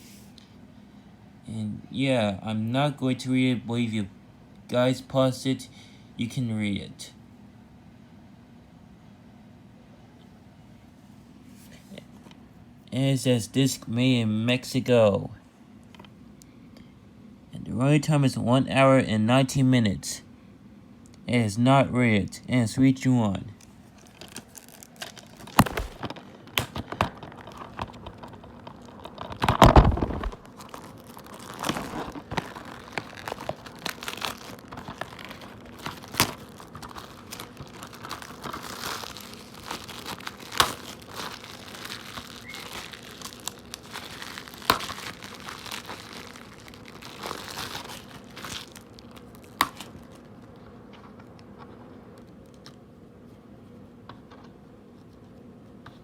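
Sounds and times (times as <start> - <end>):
plastic wrap crinkling: 23.6 - 52.8.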